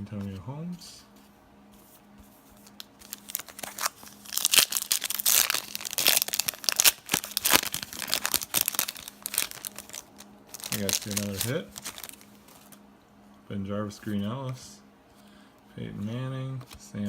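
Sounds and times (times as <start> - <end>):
card pack wrapper tearing and crinkling: 2.6 - 12.8.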